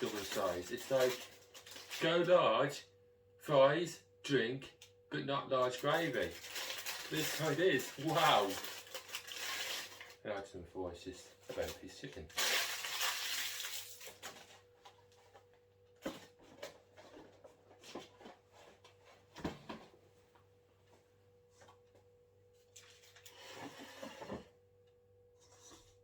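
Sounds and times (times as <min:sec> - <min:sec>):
paper rustling: 0:00.0 - 0:02.2, 0:05.8 - 0:10.2
faint steady hum: 0:00.0 - 0:26.0.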